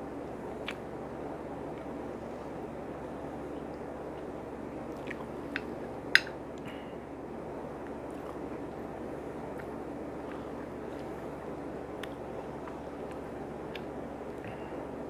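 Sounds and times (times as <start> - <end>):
steady background hum: 0.0 - 15.0
person chewing food: 4.9 - 6.3, 7.8 - 8.5, 9.5 - 11.3.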